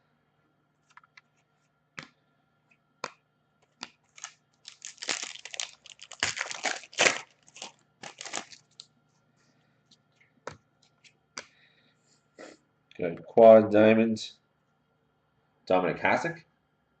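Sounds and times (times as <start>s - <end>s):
plastic wrapper tearing and crumpling: 4.0s - 8.9s.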